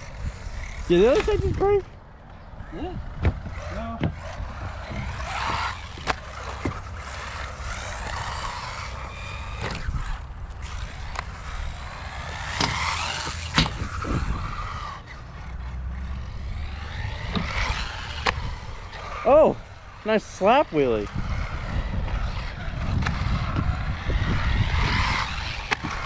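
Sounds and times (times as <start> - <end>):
electric buggy motor whining: 0.0 - 26.0.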